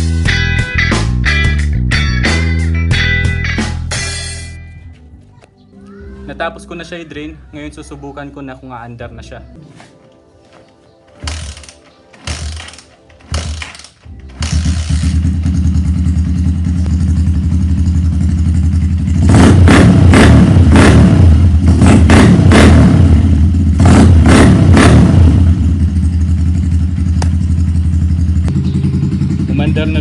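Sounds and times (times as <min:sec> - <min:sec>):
motorcycle engine idling and revving: 0:11.1 - 0:30.0.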